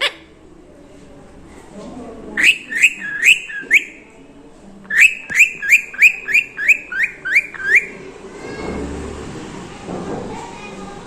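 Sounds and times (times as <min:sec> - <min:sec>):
parakeet sharp repeated calls: 0:04.9 - 0:08.0.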